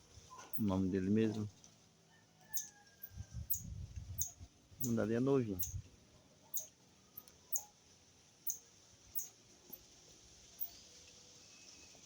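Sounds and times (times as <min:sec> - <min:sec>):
marmosets chirping: 0:02.5 - 0:02.7, 0:03.5 - 0:05.0, 0:05.6 - 0:05.8, 0:07.5 - 0:07.7, 0:08.4 - 0:09.3
light background hiss: 0:02.6 - 0:12.0.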